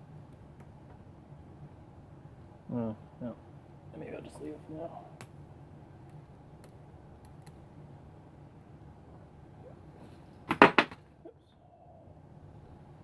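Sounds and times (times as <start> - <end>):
sharp knocks: 10.5 - 11.0.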